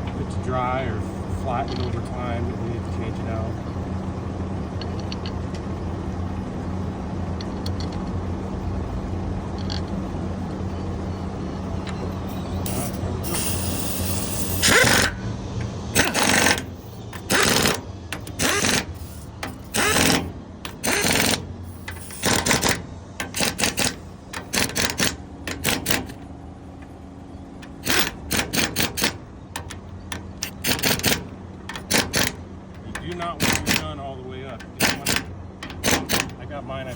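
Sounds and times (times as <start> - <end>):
impact gun hammering: 34.6 - 36.4.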